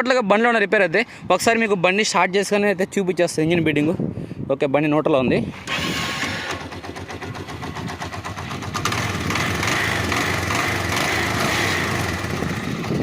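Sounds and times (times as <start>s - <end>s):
motorcycle engine running: 5.6s - 13.0s.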